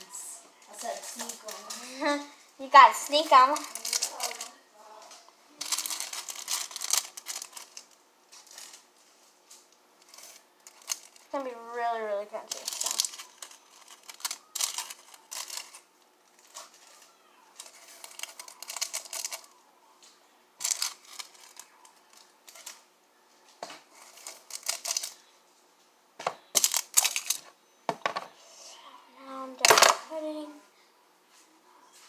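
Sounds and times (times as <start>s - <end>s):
plastic containers rattling: 3.1s - 4.5s, 5.6s - 8.8s, 12.4s - 15.8s, 17.6s - 19.5s, 20.6s - 22.7s.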